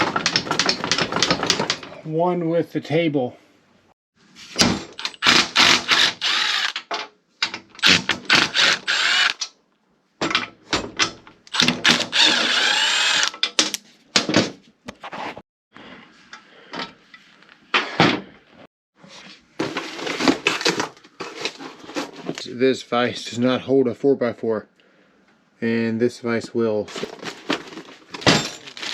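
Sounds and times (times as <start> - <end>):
loud workshop tool bursts: 5.0 - 6.8.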